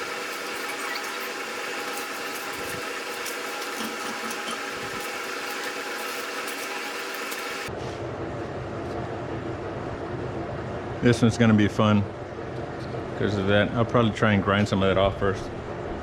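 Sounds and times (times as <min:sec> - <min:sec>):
cutting torch hissing and crackling: 0:00.0 - 0:07.7.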